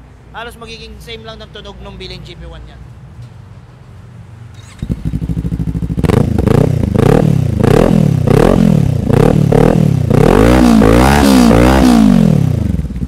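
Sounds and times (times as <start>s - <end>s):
motorcycle engine revving: 4.5s - 13.0s.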